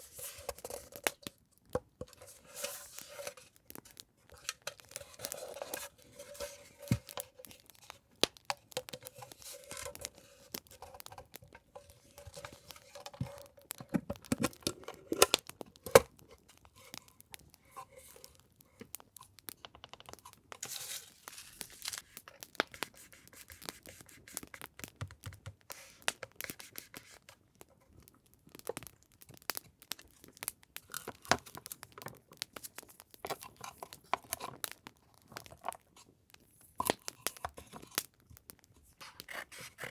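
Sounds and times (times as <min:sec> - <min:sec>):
paper and packaging crinkling: 0:00.0 - 0:39.9
small sharp clicks and taps: 0:06.9 - 0:20.7, 0:22.3 - 0:27.3.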